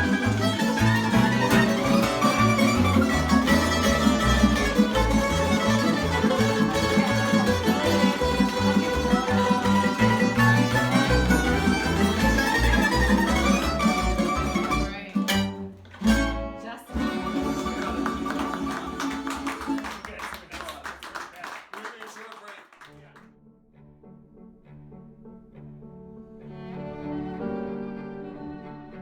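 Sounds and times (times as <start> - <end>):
bass line: 0.0 - 19.4
plucked string folk music: 0.0 - 20.0.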